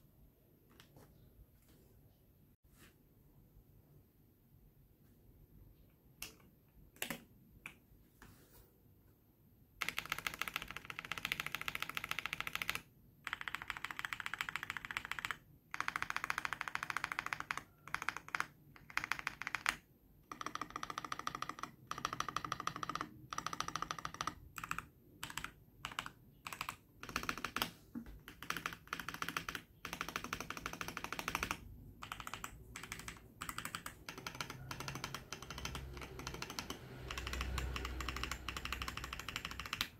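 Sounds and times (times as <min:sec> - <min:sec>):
typing on mechanical keyboard: 0:06.2 - 0:07.3, 0:09.8 - 0:39.9.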